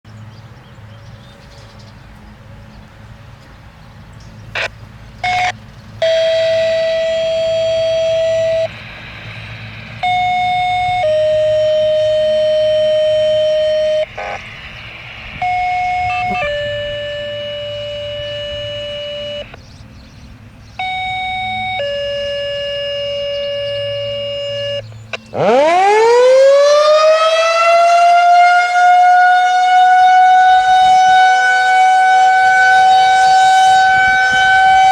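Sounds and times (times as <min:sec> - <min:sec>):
low hum: 0:04.3 - 0:25.7
electronic tones in pairs: 0:04.6 - 0:19.6, 0:20.8 - 0:25.7
siren winding up: 0:04.6 - 0:19.6, 0:20.8 - 0:34.9.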